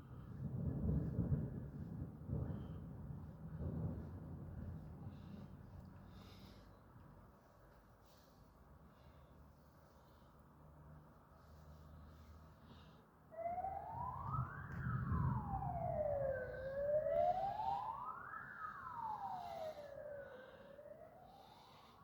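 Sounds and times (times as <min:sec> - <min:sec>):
low rumble: 0:00.0 - 0:06.0
siren wailing: 0:13.3 - 0:22.0.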